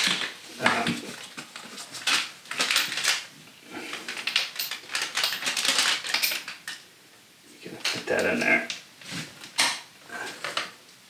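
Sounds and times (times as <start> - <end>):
tool and fittings clicking and rattling: 1.4 - 3.3, 3.9 - 6.8.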